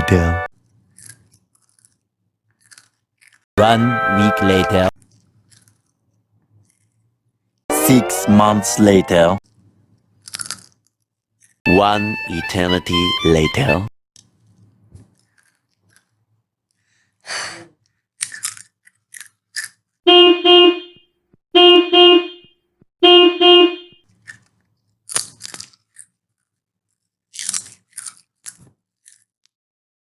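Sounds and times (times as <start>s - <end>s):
crunching and chewing: 0.6s - 3.5s, 5.0s - 7.6s, 9.5s - 11.6s, 17.8s - 20.0s, 24.1s - 29.4s
double honk sound effect: 20.1s - 24.0s.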